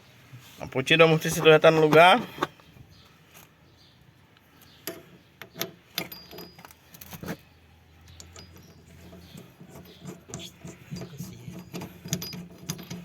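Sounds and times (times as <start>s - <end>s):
metal tools clinking: 4.8s - 7.4s, 8.0s - 13.0s.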